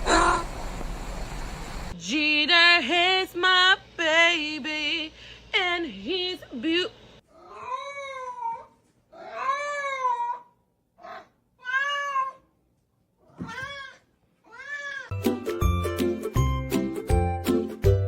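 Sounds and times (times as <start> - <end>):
cat meowing: 7.3 - 12.5, 13.3 - 15.1
upbeat music: 15.1 - 18.0.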